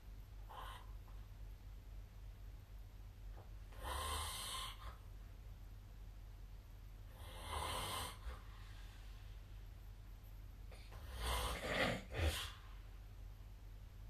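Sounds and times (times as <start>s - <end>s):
person snoring: 10.9s - 12.6s.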